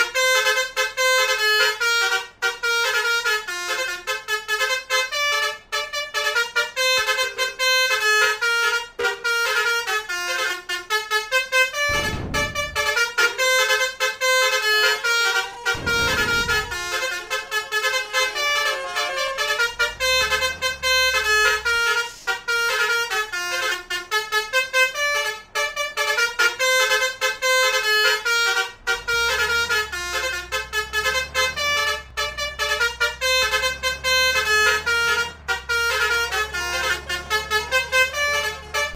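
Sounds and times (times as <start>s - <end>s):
multi-tone horns playing tune: 0.0s - 38.9s
low rumble: 11.8s - 13.2s, 15.6s - 22.0s
low drone: 11.9s - 13.0s, 15.6s - 21.8s.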